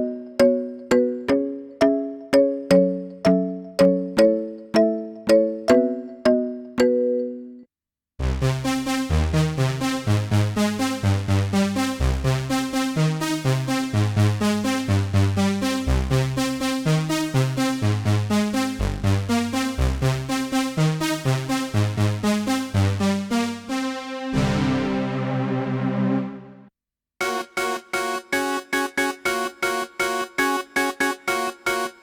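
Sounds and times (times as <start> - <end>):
synthesizer bass line: 22.8 - 26.7
synthesizer plucked notes: 23.6 - 26.7.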